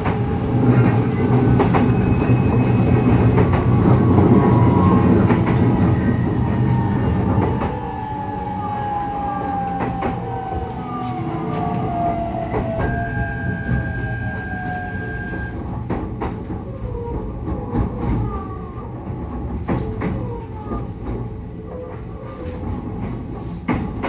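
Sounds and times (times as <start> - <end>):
heavy train rumble: 0.0 - 24.0
train wheels clicking over rail joints: 9.7 - 24.0.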